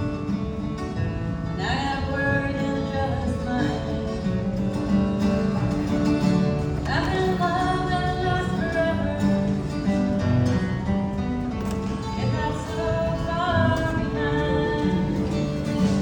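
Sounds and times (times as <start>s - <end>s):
acoustic guitar: 0.0s - 16.0s
person singing: 12.0s - 16.0s.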